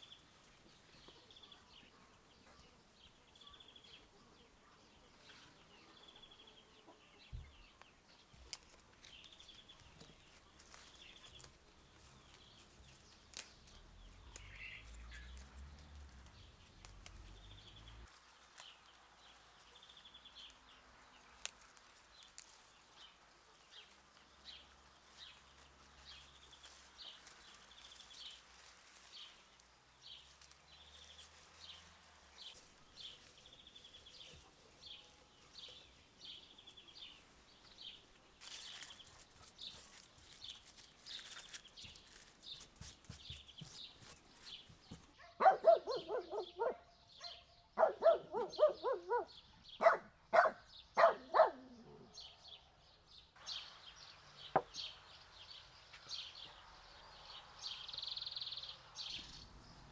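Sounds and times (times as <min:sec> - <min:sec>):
small bird chirping: 0:00.0 - 0:59.9
dog barking loudly: 0:45.2 - 0:51.8.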